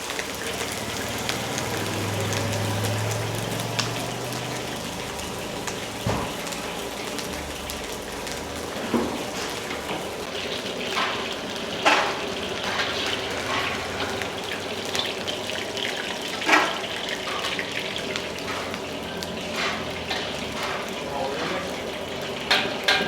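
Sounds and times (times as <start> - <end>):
hot wok hissing: 0.0 - 23.0
ladle clanking on wok: 22.4 - 23.0.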